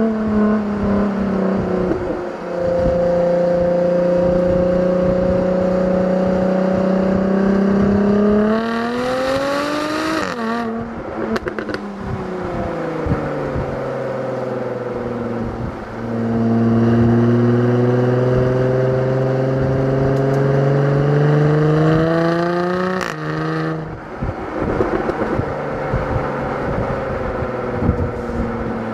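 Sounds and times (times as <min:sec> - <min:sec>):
car engine accelerating: 0:00.0 - 0:28.9
exhaust pops and crackles: 0:11.2 - 0:11.9, 0:24.6 - 0:26.8.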